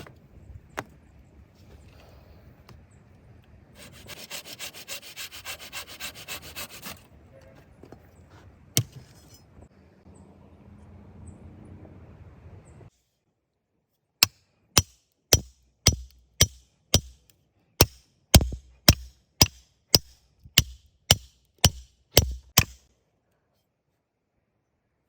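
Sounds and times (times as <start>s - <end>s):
tool striking wood: 14.2s - 17.2s, 17.8s - 22.9s.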